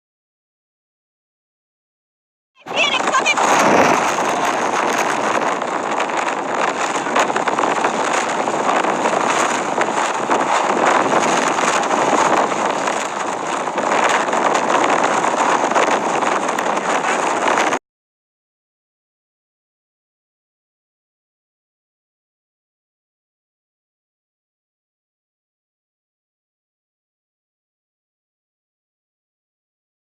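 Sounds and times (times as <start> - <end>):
loud steady rushing noise: 2.6 - 17.8.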